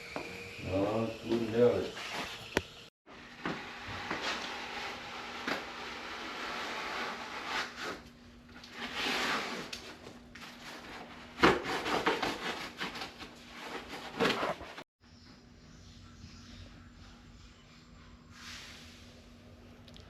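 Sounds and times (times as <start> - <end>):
rubbing and scraping handling noises: 3.4 - 14.9.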